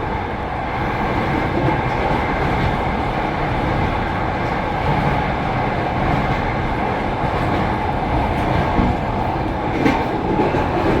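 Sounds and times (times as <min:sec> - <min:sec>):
train wheels clattering over rails: 0:01.0 - 0:11.0.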